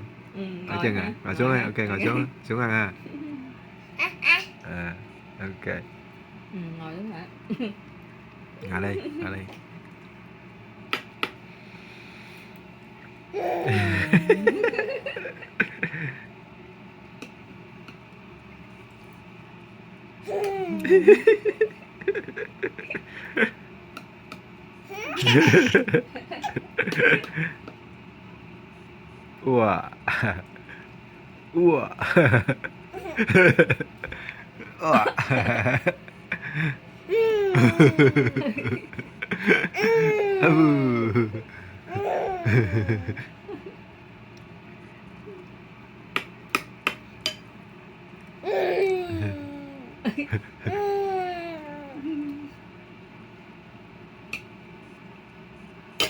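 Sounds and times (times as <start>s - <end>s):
baby laughing: 13.4s - 15.4s, 20.3s - 21.2s, 24.9s - 27.4s, 37.1s - 38.8s, 39.6s - 40.8s, 41.9s - 43.2s, 48.4s - 50.0s, 50.6s - 52.2s.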